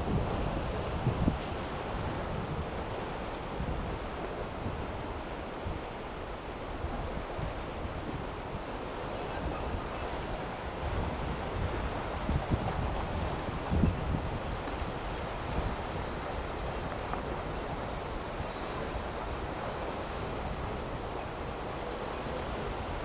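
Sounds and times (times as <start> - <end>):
wind buffeting microphone: 0.0 - 5.8, 9.2 - 21.4
rough sea waves: 0.0 - 23.0.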